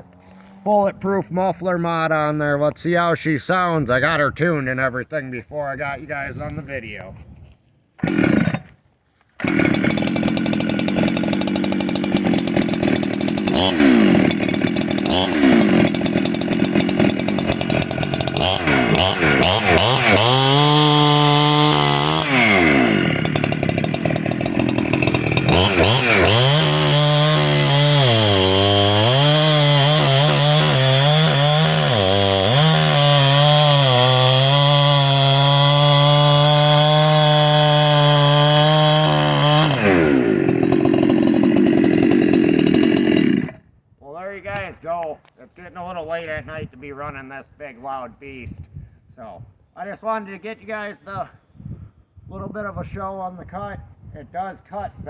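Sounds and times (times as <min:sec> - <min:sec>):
chainsaw revving: 0:08.0 - 0:08.8, 0:09.4 - 0:43.6.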